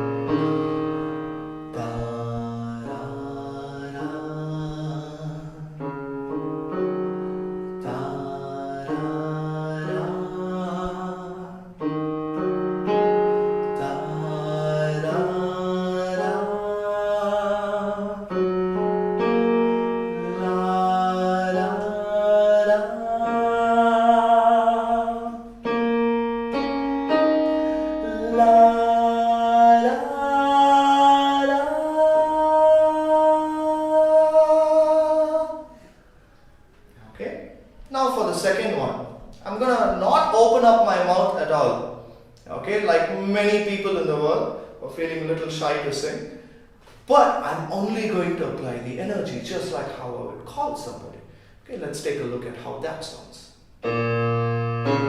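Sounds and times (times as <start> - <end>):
electronic keyboard chords: 0.0 - 37.0, 53.7 - 55.0
man singing vocal exercise: 1.7 - 6.0, 7.8 - 11.8, 13.6 - 18.4, 20.1 - 25.6, 27.6 - 35.8.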